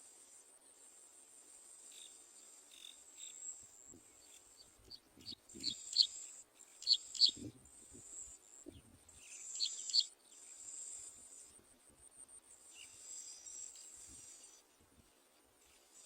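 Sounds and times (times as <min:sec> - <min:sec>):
insects trilling: 0:05.3 - 0:08.6, 0:09.2 - 0:11.6.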